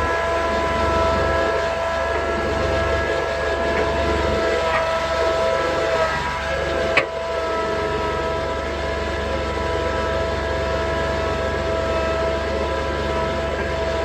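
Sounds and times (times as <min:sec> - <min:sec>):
constant whine: 0:00.0 - 0:14.0
tractor engine rumble: 0:00.0 - 0:14.0.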